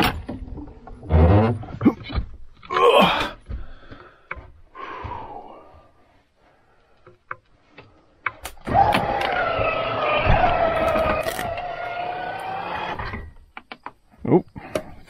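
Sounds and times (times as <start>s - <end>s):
electric motor whining: 8.7s - 13.4s.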